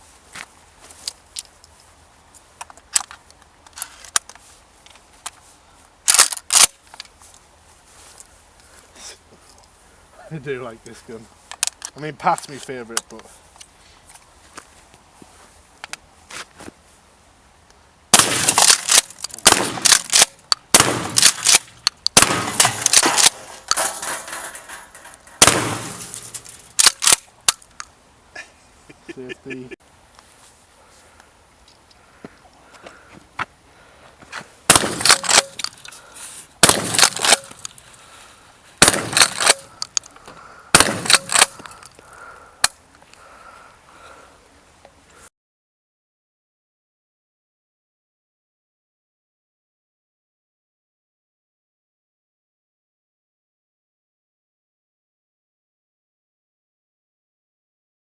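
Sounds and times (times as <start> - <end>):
firearm handling clicks: 6.1 - 7.1, 11.5 - 12.0, 18.5 - 20.6, 21.2 - 22.2, 26.1 - 27.9, 35.0 - 36.0, 36.6 - 37.8, 38.8 - 40.2, 40.8 - 41.9
gunshots with echo: 19.4 - 20.2, 20.8 - 21.6, 25.4 - 26.2, 40.7 - 41.5.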